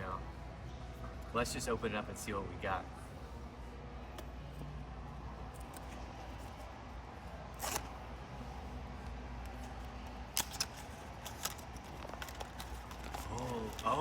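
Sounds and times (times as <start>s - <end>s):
cardboard packaging crackling: 10.3s - 14.0s.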